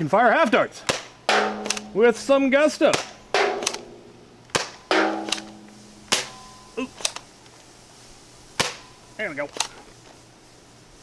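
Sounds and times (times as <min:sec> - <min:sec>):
toy blaster pops: 0:00.9 - 0:02.0, 0:02.9 - 0:03.8, 0:04.5 - 0:05.5, 0:08.6 - 0:09.0.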